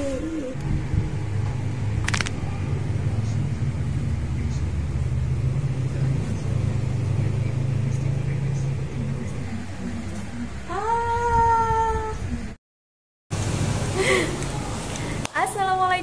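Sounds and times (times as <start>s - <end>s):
engine rumbling: 0.0s - 12.6s.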